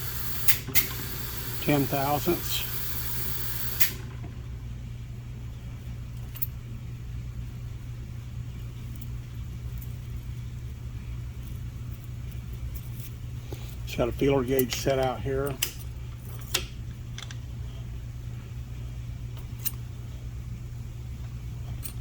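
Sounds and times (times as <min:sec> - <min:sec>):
machine humming: 0:00.0 - 0:05.6.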